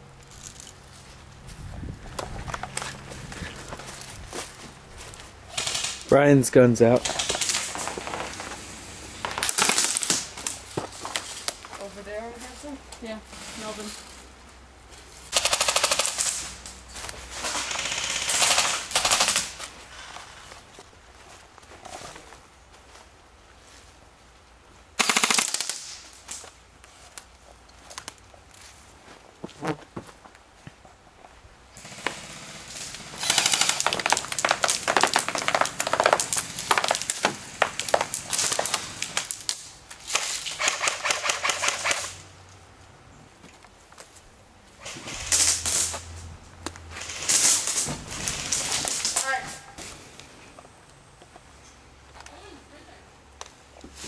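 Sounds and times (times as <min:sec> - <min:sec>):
airsoft guns firing bursts: 0:05.6 - 0:06.1, 0:15.3 - 0:16.6, 0:17.4 - 0:19.6, 0:25.0 - 0:25.9, 0:31.8 - 0:39.2, 0:40.6 - 0:42.2.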